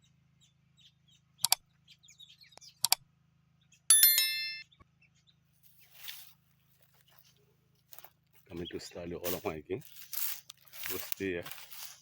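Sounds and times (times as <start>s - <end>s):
metallic ring struck: 3.9s - 4.8s.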